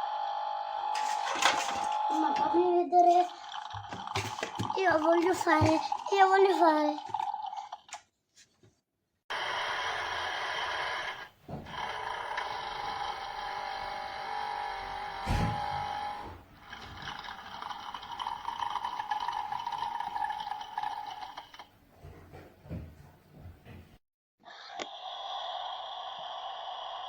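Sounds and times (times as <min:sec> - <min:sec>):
toy espresso machine buzzing: 0:00.0 - 0:07.8, 0:09.3 - 0:15.2, 0:15.9 - 0:21.7, 0:24.5 - 0:27.0
thump: 0:15.2 - 0:16.4.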